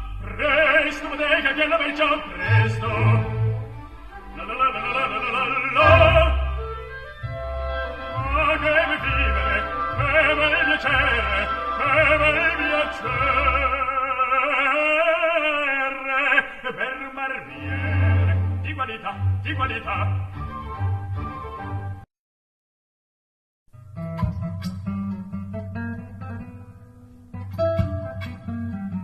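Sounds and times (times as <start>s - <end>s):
operatic singing with orchestra: 0.0s - 20.8s.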